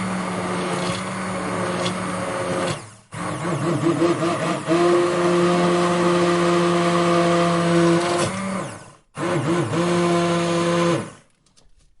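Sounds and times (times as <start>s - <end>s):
electric blender motor running: 0.0s - 11.2s.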